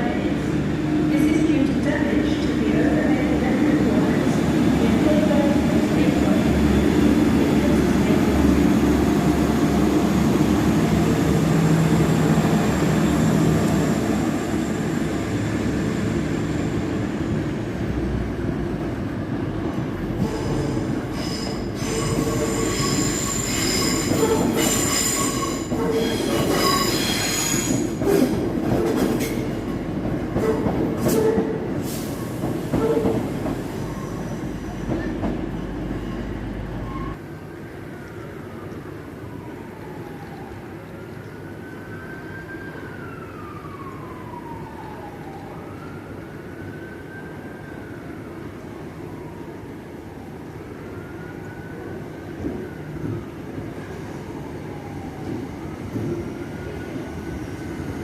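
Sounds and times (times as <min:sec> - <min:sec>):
train running on track: 0:00.0 - 0:41.6, 0:48.0 - 0:58.0.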